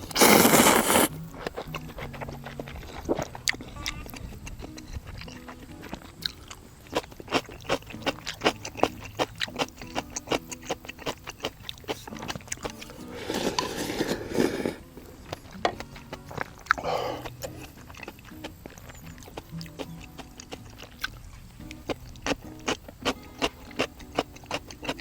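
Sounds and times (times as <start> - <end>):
slurping noodles: 0.0 - 1.2, 12.8 - 14.8
wet chewing clicks: 0.0 - 25.0.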